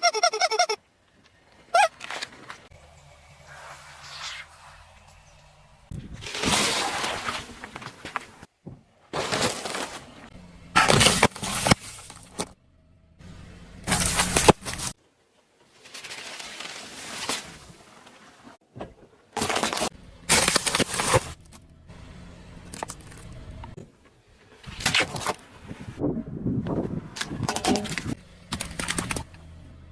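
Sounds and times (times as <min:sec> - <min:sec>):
objects cracking under tyres: 0:05.9 - 0:12.6, 0:13.8 - 0:15.0, 0:18.9 - 0:21.7, 0:22.6 - 0:25.5, 0:27.1 - 0:29.5.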